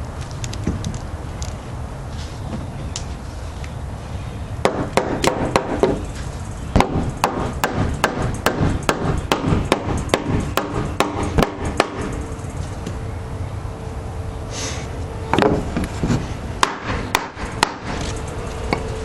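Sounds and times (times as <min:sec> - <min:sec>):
hammer striking wood: 0:04.6 - 0:06.0, 0:06.7 - 0:12.2, 0:15.4 - 0:18.0.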